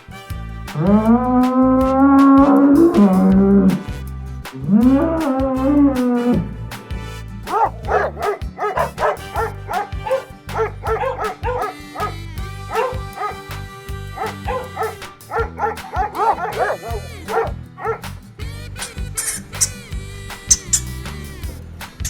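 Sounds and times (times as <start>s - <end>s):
background music: 0.0s - 22.0s
dog yipping and barking: 7.5s - 13.4s, 14.2s - 18.0s.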